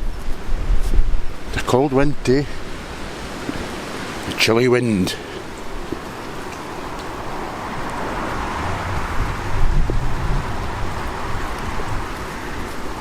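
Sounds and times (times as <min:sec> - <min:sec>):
gusty wind blowing: 0:05.4 - 0:13.0
wind buffeting microphone: 0:05.5 - 0:13.0.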